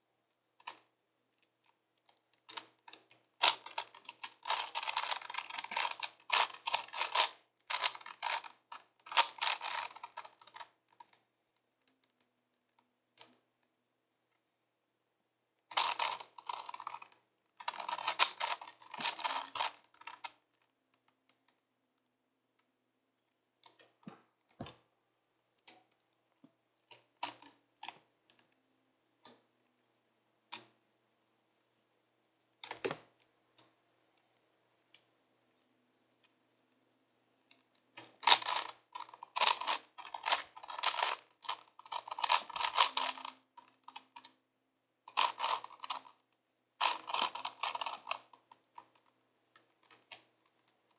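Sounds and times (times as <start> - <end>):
puzzle cube plastic clicking: 0.6 - 11.2, 15.7 - 21.6, 26.8 - 28.5, 37.5 - 44.4, 45.1 - 46.2, 46.8 - 50.7.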